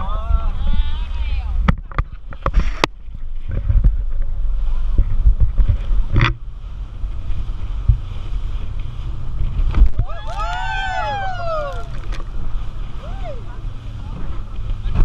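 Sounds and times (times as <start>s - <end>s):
motorboat low rumble: 0.0s - 15.0s
wind on microphone: 0.0s - 15.0s.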